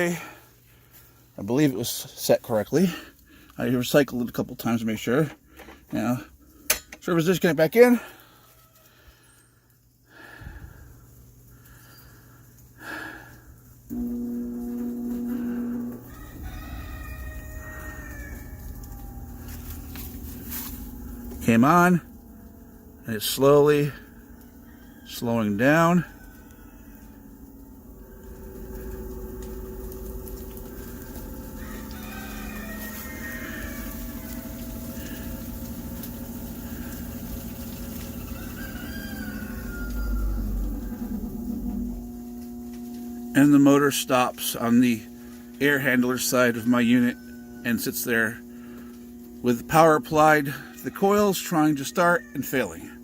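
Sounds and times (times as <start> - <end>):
blower motor humming: 0.0 - 53.0
high-pitched whine: 13.9 - 53.0
low rumble: 16.4 - 23.3, 26.1 - 32.0, 39.5 - 43.2.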